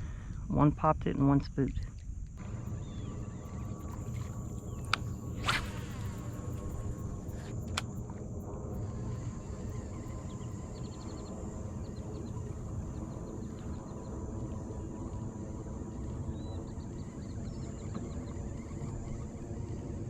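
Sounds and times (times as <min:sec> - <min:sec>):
wind rumble on microphone: 0:00.0 - 0:20.0
sharp click: 0:03.8 - 0:08.0.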